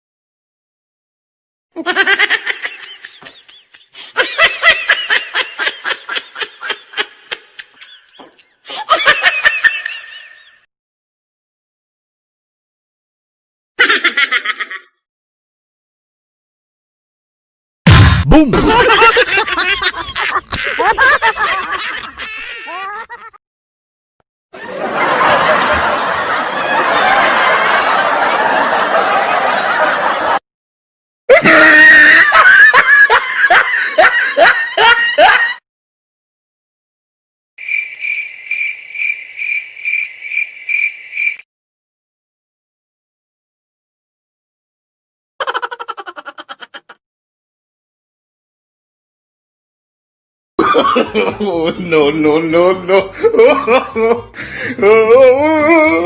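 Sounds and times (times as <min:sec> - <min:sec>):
crowd laughing: 0:01.8 - 0:10.7, 0:13.8 - 0:14.9, 0:17.9 - 0:23.4, 0:24.6 - 0:30.4, 0:31.3 - 0:35.6, 0:45.4 - 0:47.0, 0:50.6 - 0:56.0
pulsing laughter: 0:18.4 - 0:23.4, 0:45.4 - 0:47.0.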